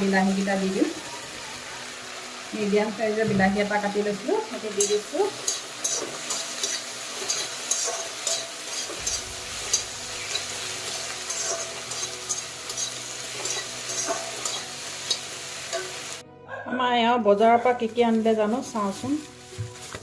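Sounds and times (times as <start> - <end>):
vegetables sizzling in a wok: 0.0 - 16.2, 17.3 - 20.0
spatula scraping a pan: 4.8 - 15.9.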